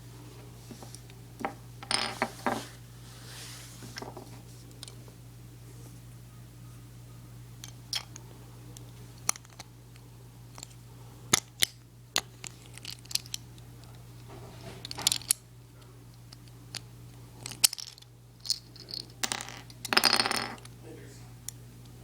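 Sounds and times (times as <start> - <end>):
clicks and snaps of toy parts: 10.5 - 13.4.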